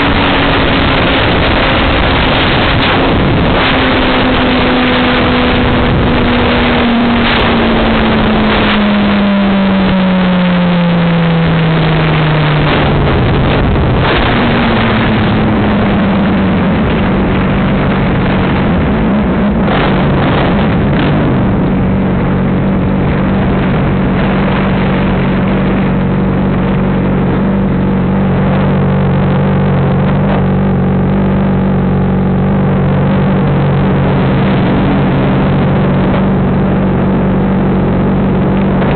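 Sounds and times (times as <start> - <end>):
motorcycle engine slowing: 0.0 - 38.9
wind rushing over microphone: 0.0 - 38.9.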